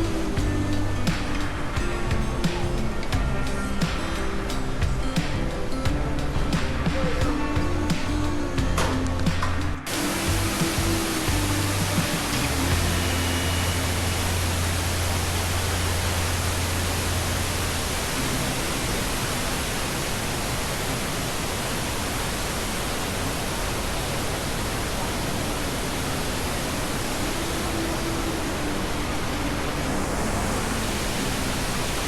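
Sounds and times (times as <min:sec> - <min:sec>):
low steady hum: 0:07.3 - 0:32.0
waterfall roaring: 0:09.2 - 0:32.0.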